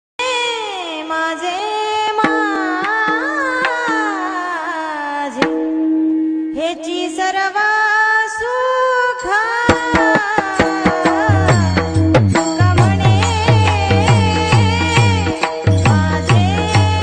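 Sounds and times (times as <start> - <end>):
person singing devotional song: 0.2 - 5.5, 6.4 - 17.0
drum strokes: 2.2 - 4.3, 9.7 - 17.0.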